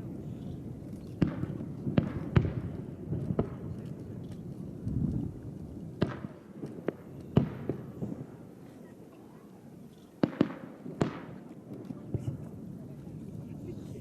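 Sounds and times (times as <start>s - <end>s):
distant firework bursts: 0.0s - 4.7s, 5.9s - 8.6s, 10.2s - 12.8s.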